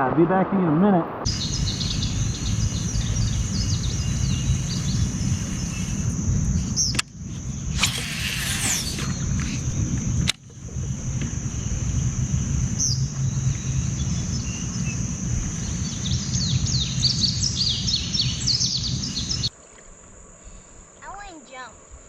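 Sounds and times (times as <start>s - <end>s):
wind and rain rumble: 0.0s - 7.9s, 9.0s - 22.0s
bird chirping rapidly: 1.3s - 6.0s
insect trill: 1.3s - 22.0s.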